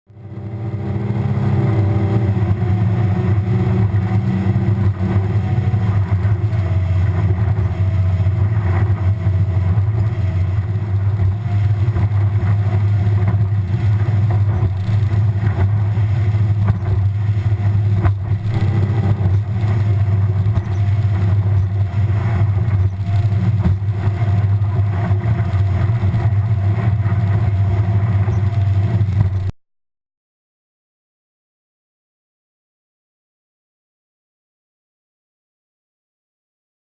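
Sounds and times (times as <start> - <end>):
outboard motor drone: 0.1 - 29.5
rushing wind and water: 0.2 - 29.5.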